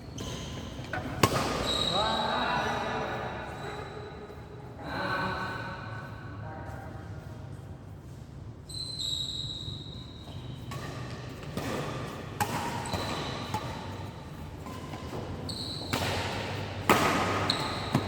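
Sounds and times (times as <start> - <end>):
sneakers squeaking on floor: 0.0 - 4.8, 7.0 - 18.0
racket hitting shuttlecock: 0.8 - 1.7, 10.6 - 18.0.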